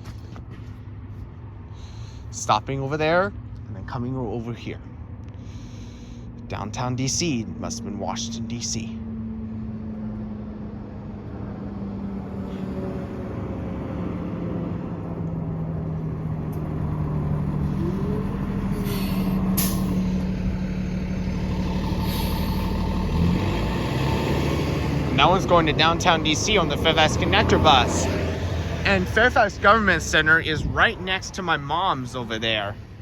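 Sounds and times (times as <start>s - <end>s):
bus diesel engine running: 0.0s - 33.0s
air brake hiss: 18.7s - 20.2s, 22.0s - 22.8s.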